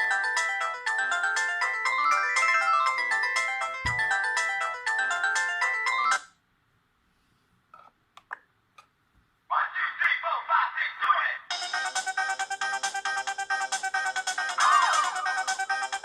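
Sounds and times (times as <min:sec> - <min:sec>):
polyphonic ringtone: 0:00.0 - 0:06.2.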